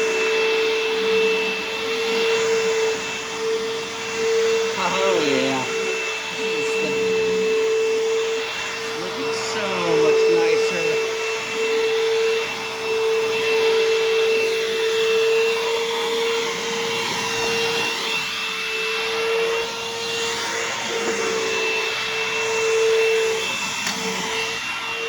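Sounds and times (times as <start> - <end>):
upright vacuum running: 0.0 - 25.0.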